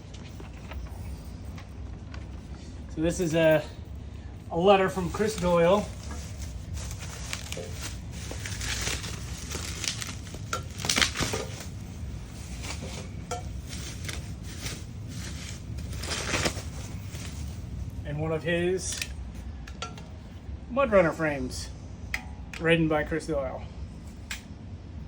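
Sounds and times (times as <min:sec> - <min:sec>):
paper and packing material crinkling: 0:00.0 - 0:03.6, 0:04.5 - 0:18.0
loud paper crumpling: 0:04.8 - 0:17.8.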